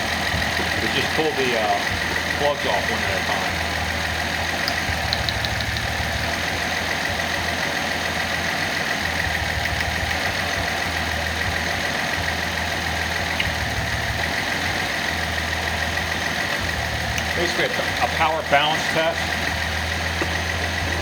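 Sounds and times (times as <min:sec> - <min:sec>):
low pulsing hum: 0:00.0 - 0:07.6
car engine idling: 0:00.0 - 0:21.0.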